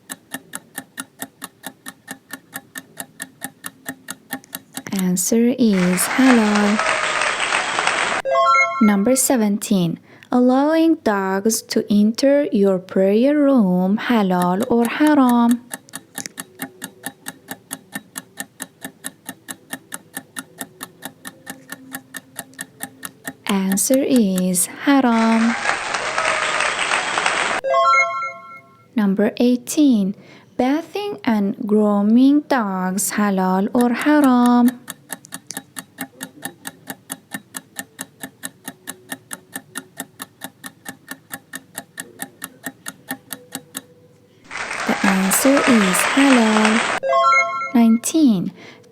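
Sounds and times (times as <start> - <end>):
clock-like ticking: 0.0 - 6.8, 13.6 - 25.5, 32.5 - 43.9.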